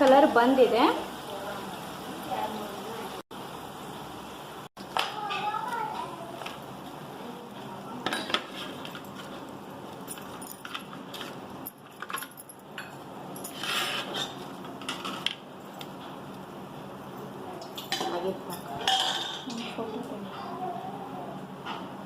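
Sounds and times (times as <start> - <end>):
utensils clinking against a pan: 8.0 - 16.3, 17.1 - 20.6.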